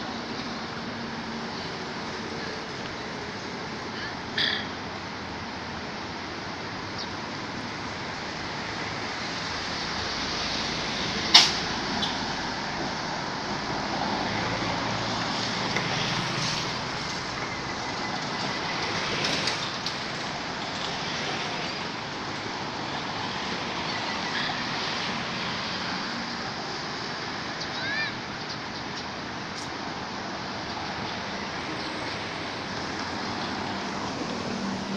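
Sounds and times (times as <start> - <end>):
rushing outdoor background noise: 0.0 - 34.9.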